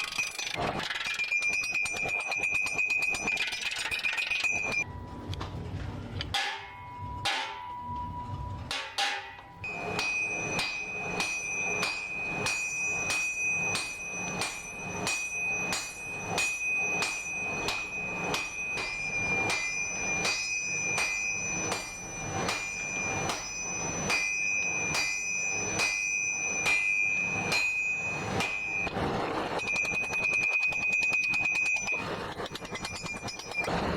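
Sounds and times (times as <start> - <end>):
hammer striking anvil: 6.2 - 7.9, 8.6 - 33.9
anvil ringing: 6.3 - 33.9.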